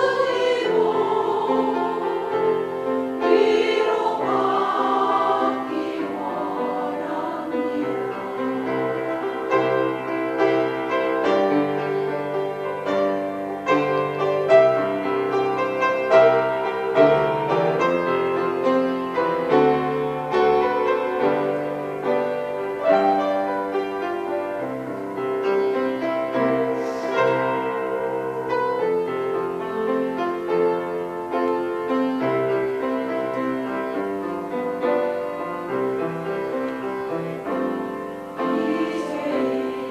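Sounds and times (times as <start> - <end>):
choir holding a note: 0.0 - 12.2, 36.5 - 39.9
piano playing chords: 0.0 - 39.9.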